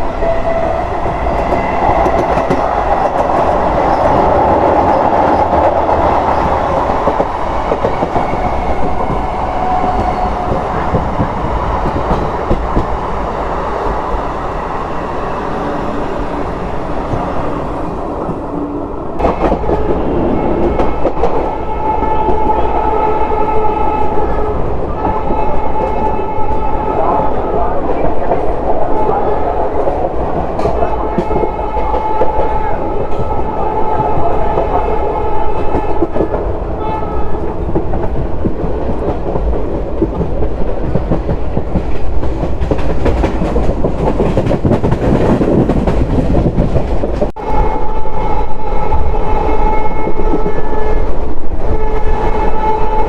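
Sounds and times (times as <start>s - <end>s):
train horn: 0.0s - 2.7s, 7.9s - 11.0s, 19.2s - 27.7s, 30.6s - 37.6s, 47.4s - 53.0s
train wheels rumbling on track: 0.0s - 53.0s.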